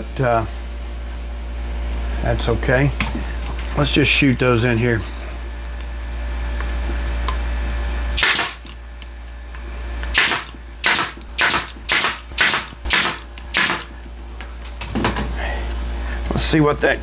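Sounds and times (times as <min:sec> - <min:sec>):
steady low hum: 0:00.0 - 0:17.0
nail gun firing into wood: 0:08.2 - 0:08.8, 0:10.1 - 0:14.0.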